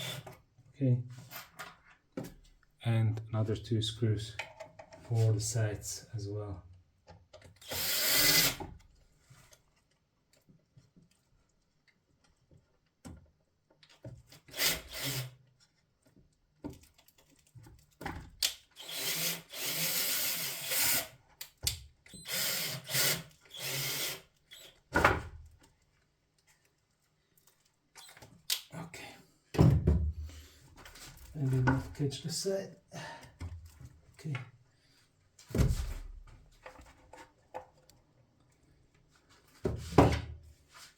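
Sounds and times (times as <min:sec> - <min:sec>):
electric screwdriver running: 0:07.7 - 0:08.6, 0:22.3 - 0:24.2.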